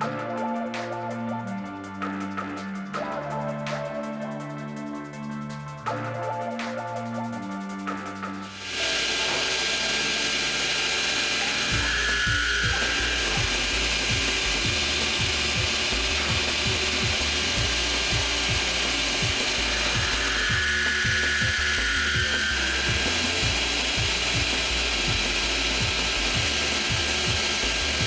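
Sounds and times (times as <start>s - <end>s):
machine whine: 0.0s - 28.0s
fast clicks: 8.7s - 28.0s.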